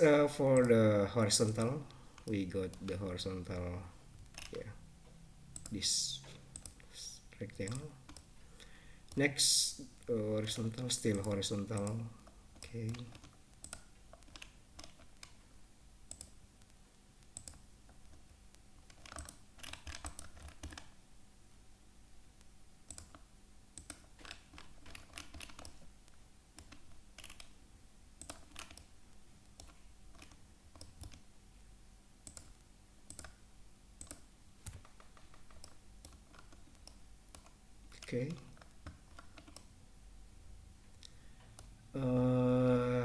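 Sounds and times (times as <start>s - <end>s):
mouse and keyboard clicks: 7.6s - 8.3s, 18.9s - 21.0s, 23.8s - 25.9s, 26.6s - 27.6s, 34.0s - 39.7s.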